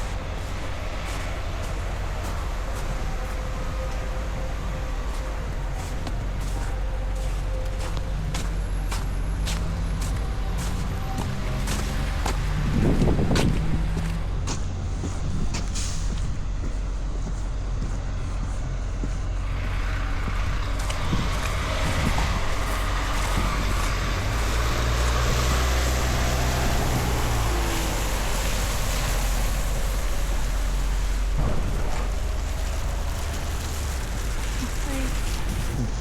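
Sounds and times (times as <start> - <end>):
heavy vehicle engine droning: 0.0 - 36.0
hiss of tyres: 15.0 - 36.0.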